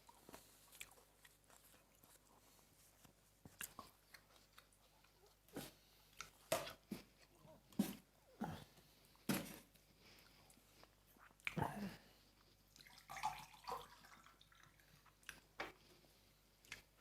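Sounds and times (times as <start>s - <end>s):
wet chewing mouth noises: 3.5s - 7.3s, 16.6s - 17.0s.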